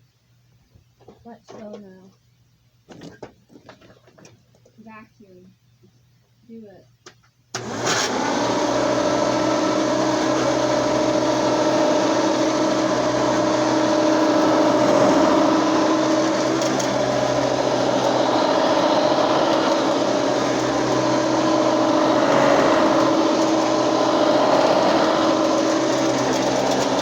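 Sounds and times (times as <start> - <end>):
vacuum cleaner running: 7.6 - 27.0.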